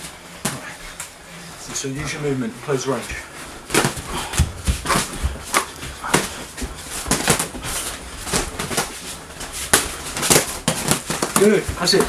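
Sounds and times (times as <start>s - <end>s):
gloved punches thudding: 3.7s - 12.0s.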